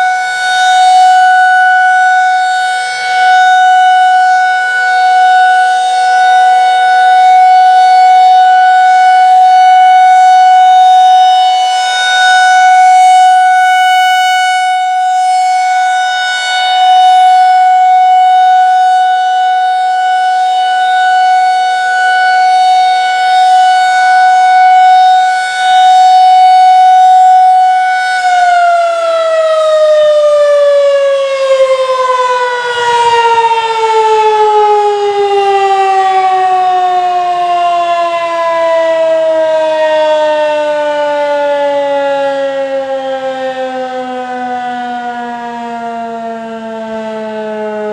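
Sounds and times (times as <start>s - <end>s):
rotating warning siren: 0.0s - 47.9s.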